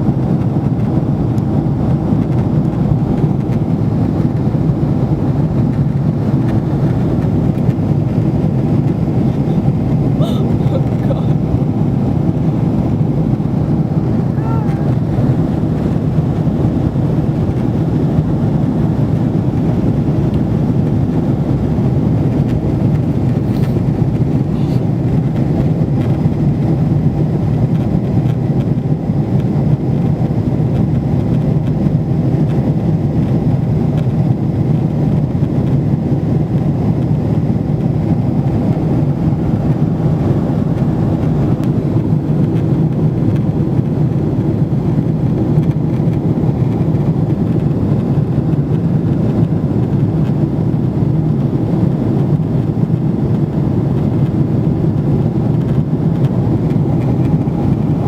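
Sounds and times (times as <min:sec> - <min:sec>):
aircraft cabin engine drone: 0:00.0 - 0:58.0.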